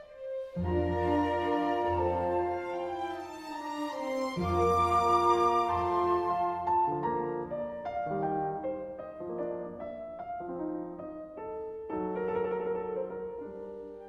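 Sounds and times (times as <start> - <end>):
slow piano-like keyboard music: 0.0 - 14.0.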